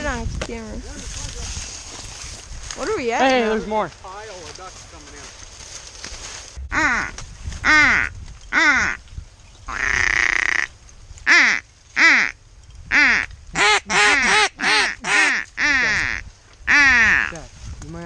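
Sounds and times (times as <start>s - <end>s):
duck call quacks: 6.7s - 9.0s, 9.7s - 10.7s, 11.3s - 17.4s.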